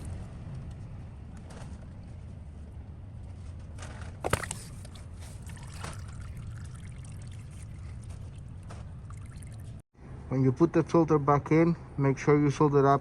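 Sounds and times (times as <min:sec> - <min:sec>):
oil pouring into drain pan: 0:05.3 - 0:08.3.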